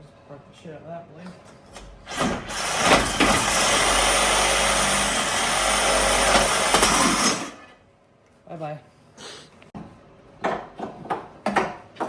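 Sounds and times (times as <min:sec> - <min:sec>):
power saw cutting metal: 0:02.1 - 0:07.8.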